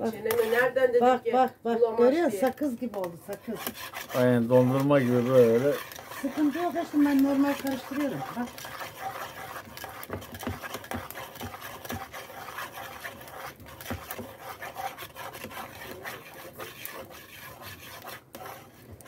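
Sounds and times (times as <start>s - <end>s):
spoon scraping a pan: 0.0s - 0.9s, 2.3s - 19.0s
spoon knocking against pan: 10.0s - 12.1s.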